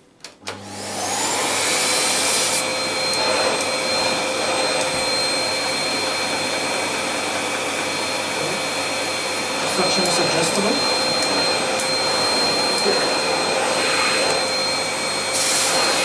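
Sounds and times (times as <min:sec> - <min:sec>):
vacuum cleaner whining: 0:00.4 - 0:16.0.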